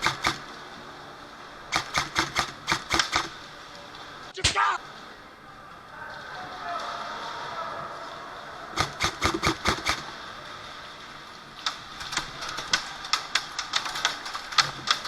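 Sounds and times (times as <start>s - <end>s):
airsoft guns firing: 0.0s - 0.5s, 1.7s - 3.4s, 8.8s - 10.1s.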